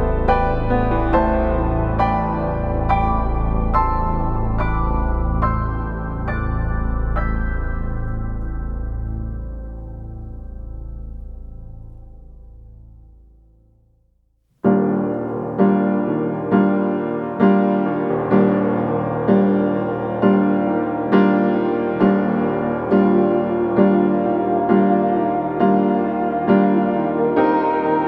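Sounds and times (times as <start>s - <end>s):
piano chords: 0.0s - 13.6s, 14.6s - 28.0s.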